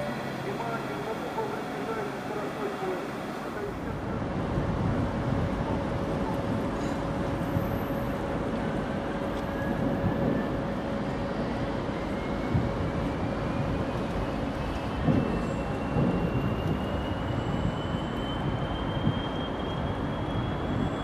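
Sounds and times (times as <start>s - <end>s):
train rumbling past: 0.0s - 21.0s
train knocks: 15.0s - 16.8s.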